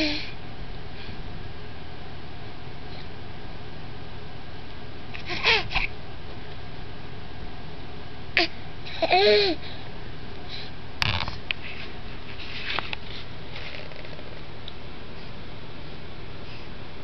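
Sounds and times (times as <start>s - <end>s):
baby cooing and squealing: 5.2s - 5.9s, 8.4s - 9.6s.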